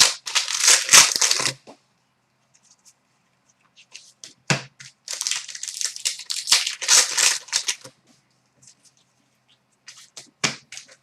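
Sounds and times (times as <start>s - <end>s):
foil wrapper tearing and crinkling: 0.0s - 1.6s, 5.1s - 7.9s.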